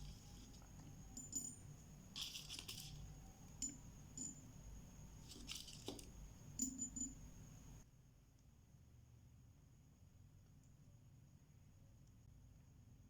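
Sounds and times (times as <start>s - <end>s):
faint high whine: 0.0s - 7.8s
steel beads clicking and rattling: 0.0s - 7.8s.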